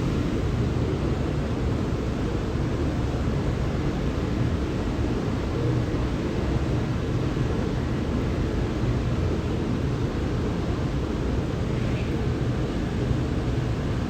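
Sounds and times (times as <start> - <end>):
steady low rumble: 0.0 - 2.5.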